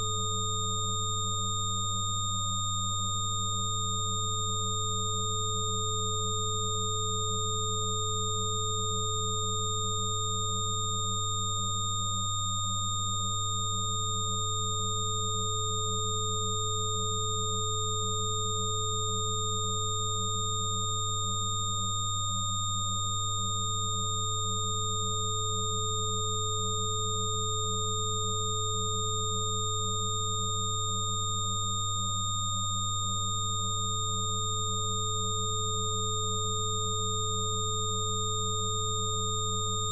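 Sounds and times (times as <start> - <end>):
steady sine tones: 0.0 - 39.9.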